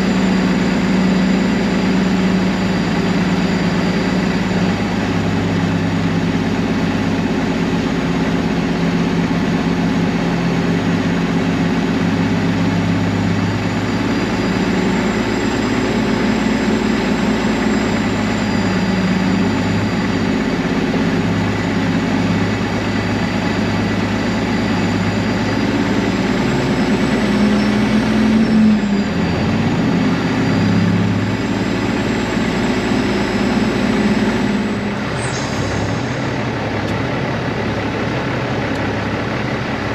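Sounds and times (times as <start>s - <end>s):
faint high whine: 0.0s - 7.8s
diesel truck engine running: 0.0s - 39.9s.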